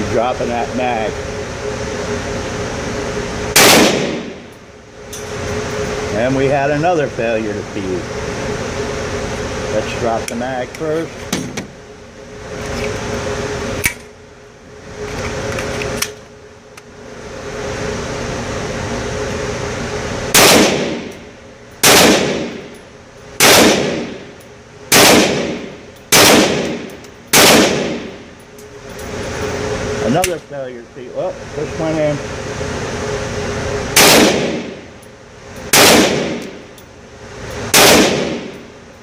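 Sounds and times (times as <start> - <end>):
pistol shots: 3.6 - 4.4, 20.4 - 21.1, 21.8 - 22.6, 23.4 - 24.2, 24.9 - 28.2, 34.0 - 34.8, 35.7 - 36.5, 37.7 - 38.6.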